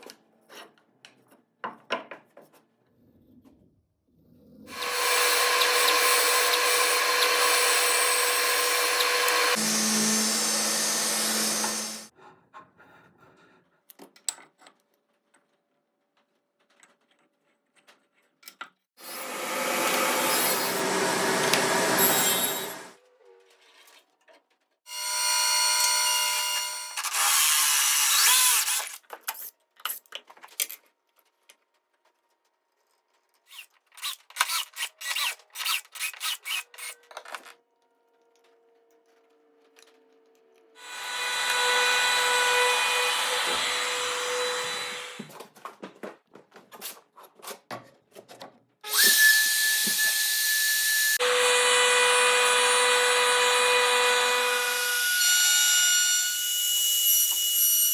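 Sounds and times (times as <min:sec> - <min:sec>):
power drill whining through wood: 0:04.7 - 0:12.1, 0:19.0 - 0:23.0, 0:24.9 - 0:28.9, 0:40.8 - 0:45.3, 0:48.9 - 0:57.9.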